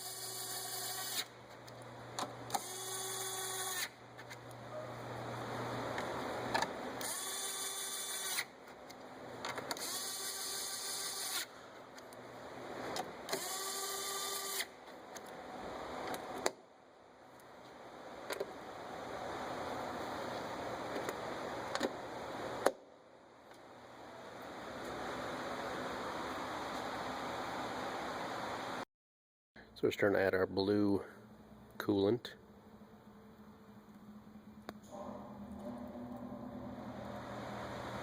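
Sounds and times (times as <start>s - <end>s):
power screwdriver motor whine: 0.0s - 1.3s, 2.5s - 3.9s, 7.0s - 8.5s, 9.8s - 11.5s, 13.3s - 14.7s.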